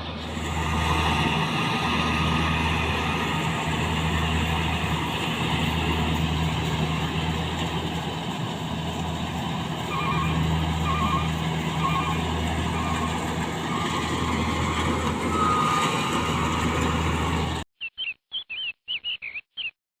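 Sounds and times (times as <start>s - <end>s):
diesel engine running: 0.0s - 17.6s
short bird-like chirps: 17.8s - 19.8s.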